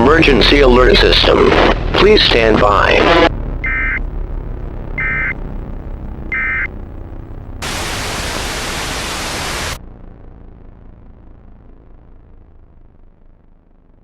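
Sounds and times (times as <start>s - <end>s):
loud white-noise static: 0.1s - 9.8s
buzzy data burst tones: 7.6s - 9.8s
faint hiss: 7.6s - 9.8s.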